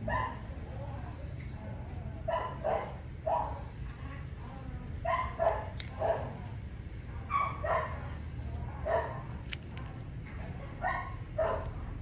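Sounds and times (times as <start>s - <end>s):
dog barking: 0.0s - 0.4s, 2.3s - 3.7s, 5.0s - 6.4s, 7.3s - 8.2s, 8.8s - 9.3s, 10.8s - 11.8s.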